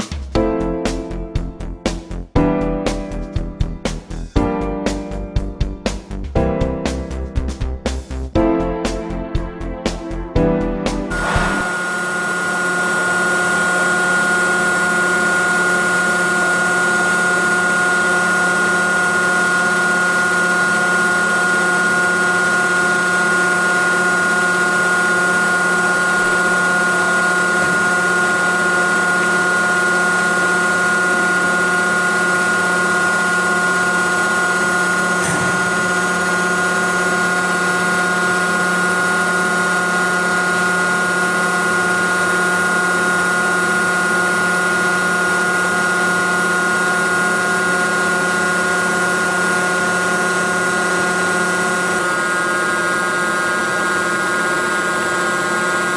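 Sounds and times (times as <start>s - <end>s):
hydraulic testing machine humming: 10.9s - 55.9s.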